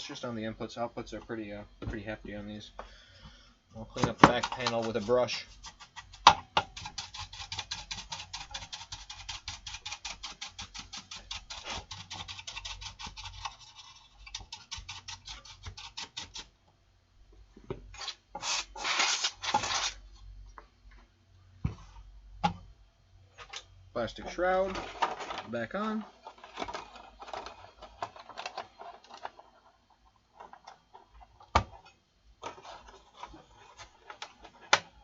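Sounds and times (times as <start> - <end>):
brush scrubbing metal panel: 6.8 - 16.5.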